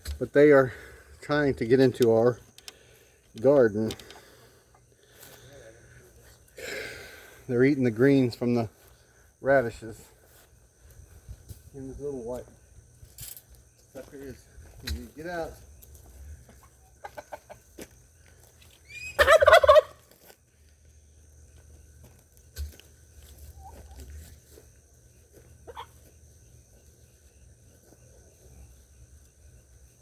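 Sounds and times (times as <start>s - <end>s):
turkey gobbling: 16.4s - 17.7s, 18.9s - 20.0s, 22.5s - 24.2s, 25.5s - 26.1s.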